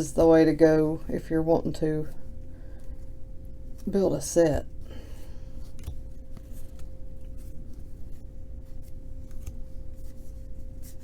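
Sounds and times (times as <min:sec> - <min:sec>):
faint hum: 0:00.0 - 0:11.0
trading cards flipped by hand: 0:05.6 - 0:11.0.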